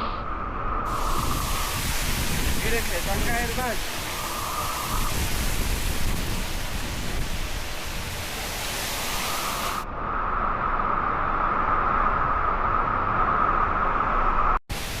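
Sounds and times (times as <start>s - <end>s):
waterfall roaring: 0.9s - 9.8s, 14.7s - 15.0s.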